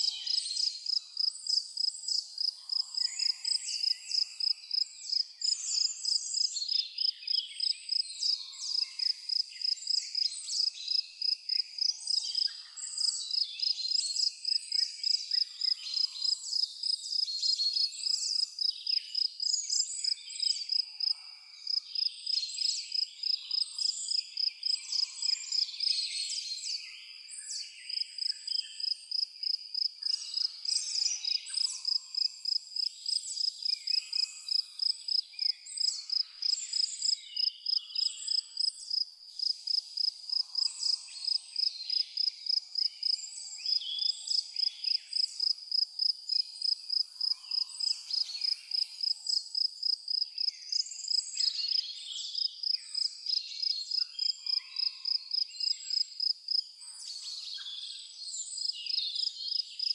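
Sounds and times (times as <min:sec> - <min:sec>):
cricket chirping: 0:00.0 - 0:17.2, 0:17.8 - 0:25.9, 0:27.9 - 0:57.6, 0:58.5 - 0:59.9
birds singing: 0:00.0 - 0:45.6.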